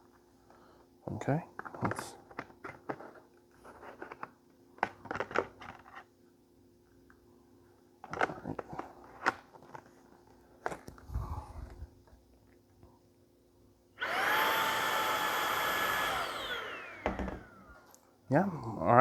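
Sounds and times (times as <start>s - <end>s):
plastic parts clicking and scraping: 1.6s - 6.1s.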